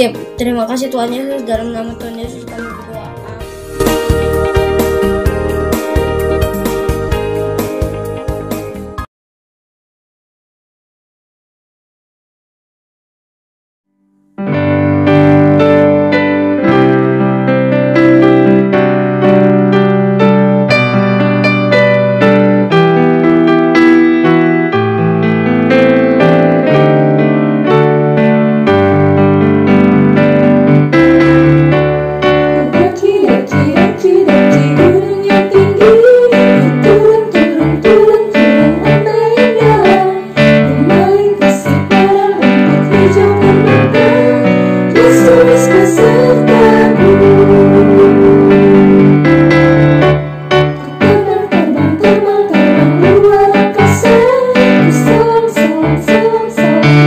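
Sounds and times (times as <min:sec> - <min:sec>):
person singing: 0:00.0 - 0:05.9, 0:32.6 - 0:49.3, 0:51.0 - 0:57.0
piano-like keyboard chords: 0:00.0 - 0:09.1, 0:14.0 - 0:57.0.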